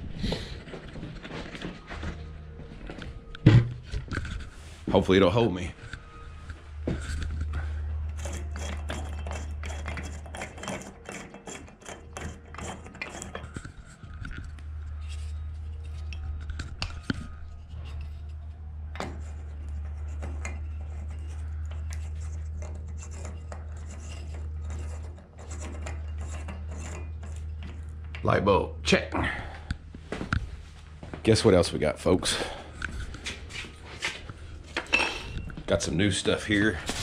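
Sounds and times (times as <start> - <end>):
steady low hum: 0.0 - 37.0
light bulb scraping in fixture: 5.8 - 28.1.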